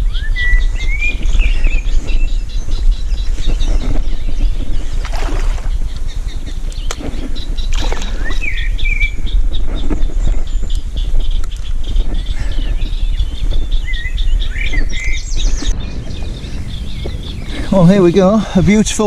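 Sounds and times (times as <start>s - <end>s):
whistled bird phrases: 0.0s - 1.8s
songbirds chirping: 0.0s - 19.0s
steady low rumble: 8.4s - 19.0s.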